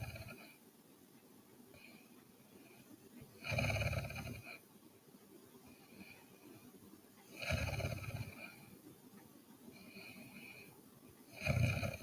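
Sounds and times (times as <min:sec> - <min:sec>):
woman snoring: 0:11.4 - 0:12.0.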